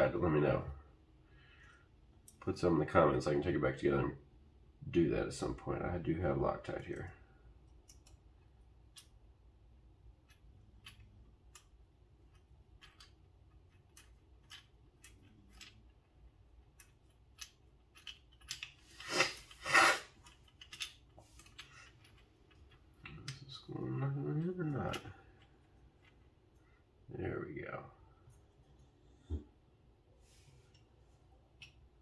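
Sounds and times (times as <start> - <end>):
small metal parts clicking: 7.7 - 8.2, 10.2 - 18.8, 20.2 - 23.4.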